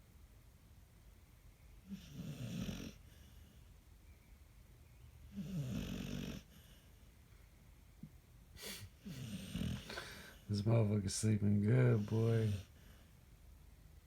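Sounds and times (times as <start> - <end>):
dog snoring: 1.8 - 3.4, 5.3 - 6.9, 9.0 - 10.1, 11.8 - 13.0
quiet breathing: 1.8 - 4.3, 4.9 - 7.8, 8.5 - 13.4.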